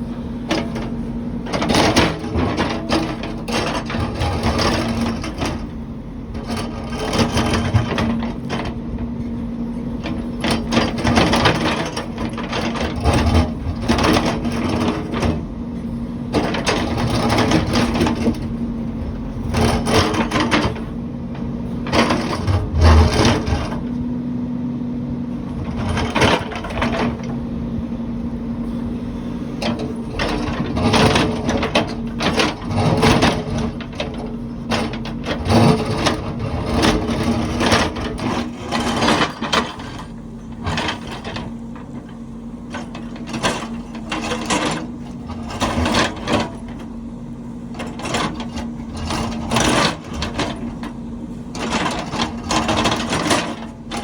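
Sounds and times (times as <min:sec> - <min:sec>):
machine clanks and knocks: 0:00.5 - 0:05.7, 0:10.0 - 0:15.4, 0:19.4 - 0:20.9, 0:21.8 - 0:24.0, 0:25.5 - 0:27.4, 0:29.6 - 0:47.0, 0:47.7 - 0:54.0
diesel engine humming: 0:20.8 - 0:43.9.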